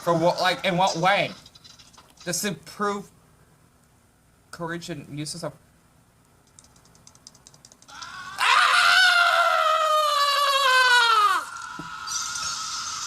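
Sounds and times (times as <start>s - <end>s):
faint rapid ticking: 6.4s - 7.9s
cartoon scream sliding down: 7.9s - 13.0s.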